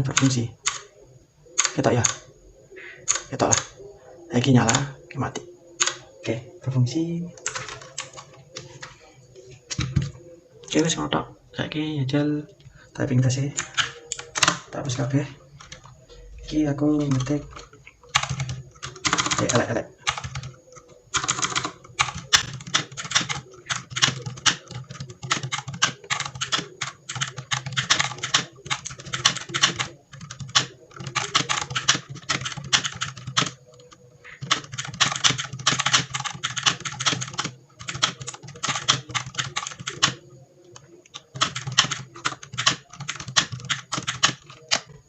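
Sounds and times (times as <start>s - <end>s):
fast typing on mechanical keyboard: 7.4s - 8.9s, 17.0s - 44.9s.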